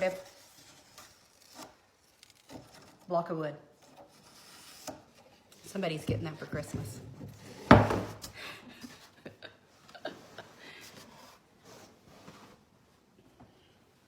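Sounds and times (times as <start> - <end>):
items rustling and knocking: 5.9 - 9.2.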